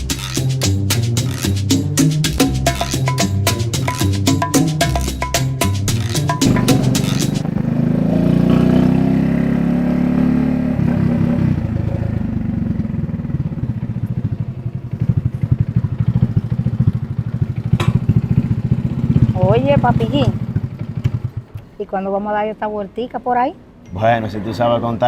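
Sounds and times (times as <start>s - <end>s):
motorcycle engine running: 5.9s - 21.7s.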